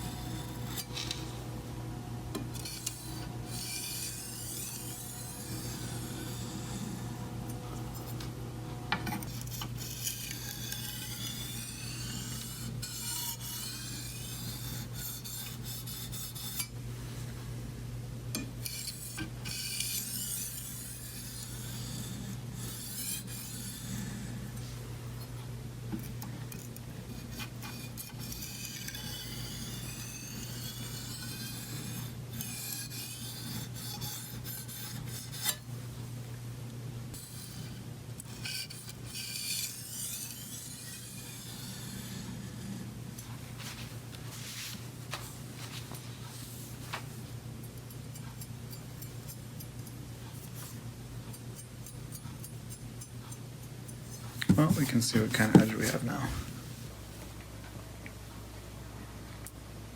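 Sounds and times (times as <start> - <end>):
knife scraping on whetstone: 0.0 - 1.3, 2.6 - 7.1, 9.2 - 16.7, 18.6 - 24.3, 27.2 - 35.6, 37.2 - 42.8, 48.1 - 56.5
low steady hum: 0.0 - 59.9.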